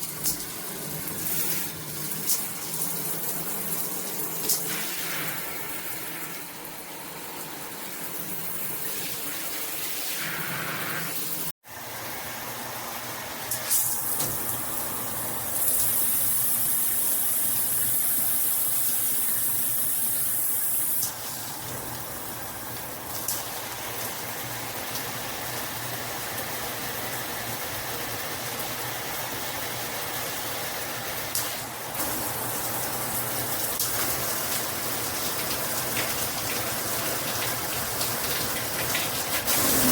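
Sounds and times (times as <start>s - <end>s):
shower head spraying water: 0.0s - 6.5s, 13.5s - 25.2s, 31.2s - 39.9s.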